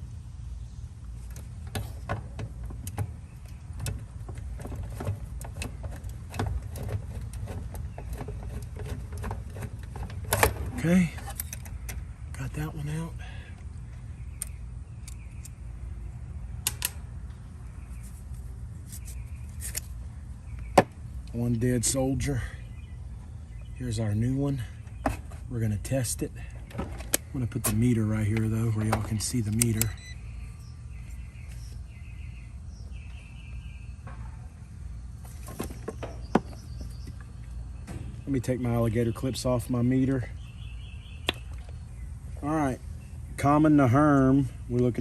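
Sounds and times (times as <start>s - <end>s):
steady low hum: 0.0s - 45.0s
sharp clicks and metal handling: 1.3s - 12.0s, 14.4s - 15.6s, 16.6s - 17.0s.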